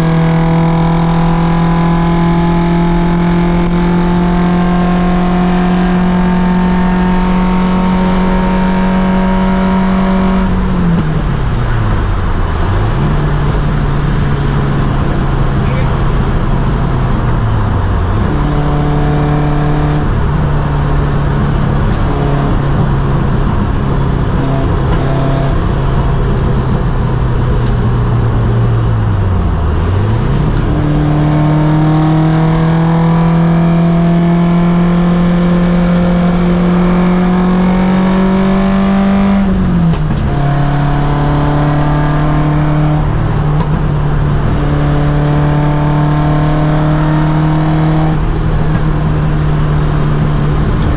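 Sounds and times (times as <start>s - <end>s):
car engine running hard: 0.0s - 50.9s.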